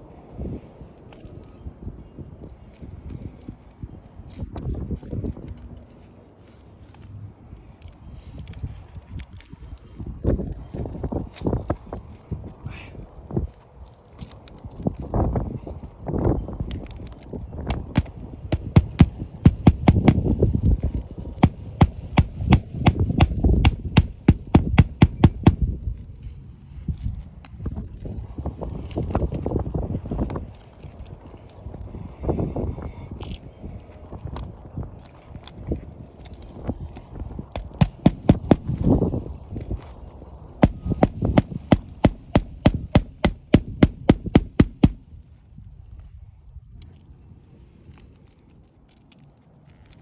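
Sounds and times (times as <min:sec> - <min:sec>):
hammer nailing shingle: 0:17.7 - 0:20.6, 0:21.4 - 0:25.7, 0:37.6 - 0:39.2, 0:40.6 - 0:45.0.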